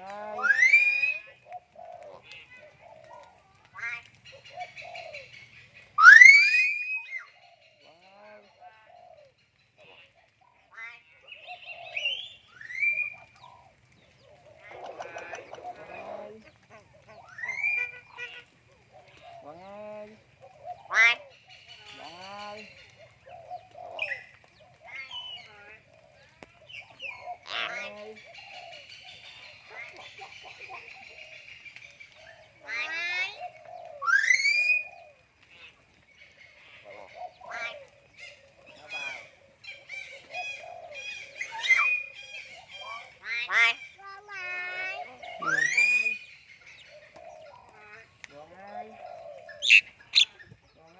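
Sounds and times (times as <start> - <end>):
myna birds harsh chattering: 0.0 - 50.9
myna birds whistling: 11.3 - 18.2, 36.1 - 44.0, 44.7 - 47.8, 48.6 - 50.8.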